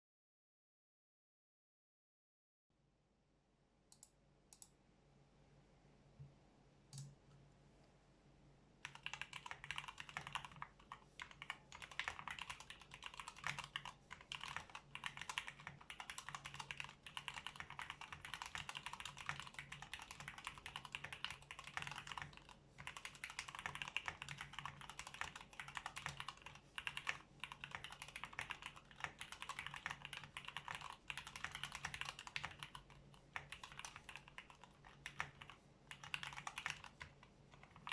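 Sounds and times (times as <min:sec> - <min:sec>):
mechanical keyboard typing: 0:08.8 - 0:37.9.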